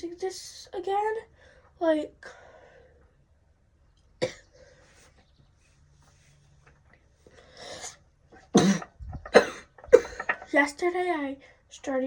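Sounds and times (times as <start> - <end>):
soft breath: 1.3 - 3.2
person coughing: 4.2 - 4.5, 8.6 - 10.4.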